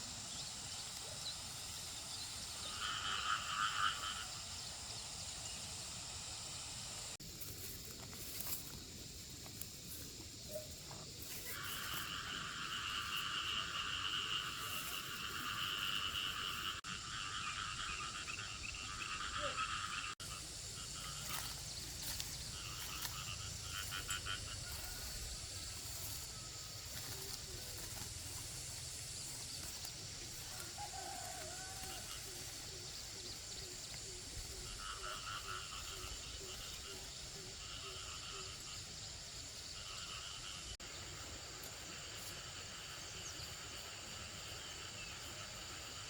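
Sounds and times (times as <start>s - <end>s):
outdoor background noise: 0.0s - 46.0s
rapidly pulsing animal trill: 11.4s - 38.8s.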